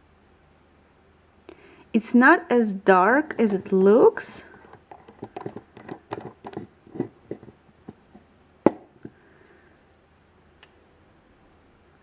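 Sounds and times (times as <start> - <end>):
bottle and cap clicking on hard surface: 4.5 - 8.0.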